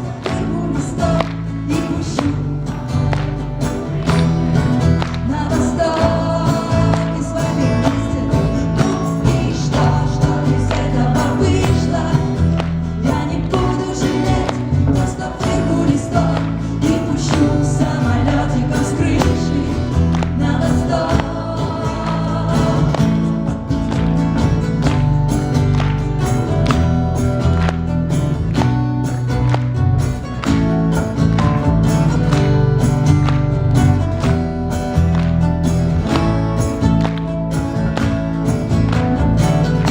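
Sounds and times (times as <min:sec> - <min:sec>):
person singing: 0:00.0 - 0:03.1, 0:04.2 - 0:23.3
heavy bass: 0:00.0 - 0:39.9
live pop band playing: 0:00.0 - 0:39.9
steady drum beat: 0:00.0 - 0:39.9.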